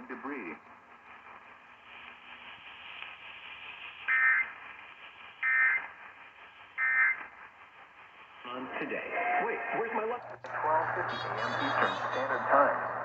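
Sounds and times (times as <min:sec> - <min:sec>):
radio static hiss: 0:00.0 - 0:13.0
digital data-burst screeches: 0:04.0 - 0:04.6.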